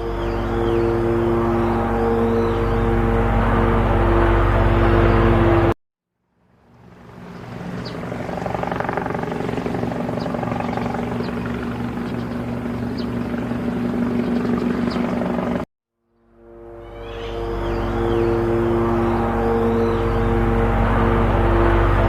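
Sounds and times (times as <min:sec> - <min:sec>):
loud steady held tones: 0:00.0 - 0:05.7, 0:07.0 - 0:15.6, 0:16.4 - 0:22.0
helicopter rotor chopping: 0:06.8 - 0:15.6, 0:17.9 - 0:22.0.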